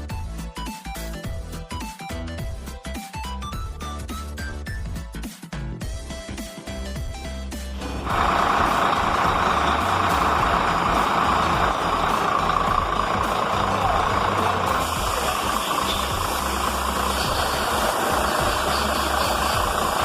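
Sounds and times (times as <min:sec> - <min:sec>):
background music: 0:00.0 - 0:20.0
truck engine running: 0:06.8 - 0:20.0.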